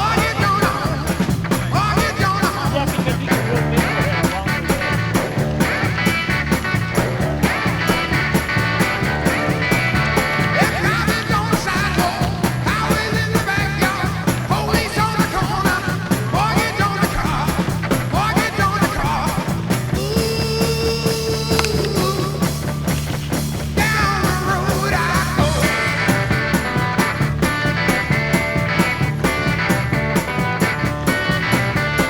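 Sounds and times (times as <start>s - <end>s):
fast drum beat: 0.0s - 32.0s
guitar: 0.0s - 32.0s
rock music: 0.0s - 32.0s.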